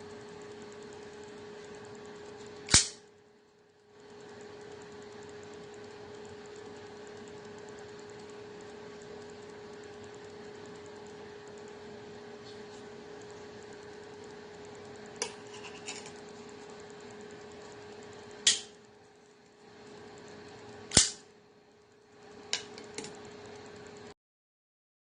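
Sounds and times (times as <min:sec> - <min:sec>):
steady low hum: 0:00.0 - 0:24.2
pocket knife clicks and snaps: 0:02.7 - 0:03.0, 0:20.9 - 0:21.2.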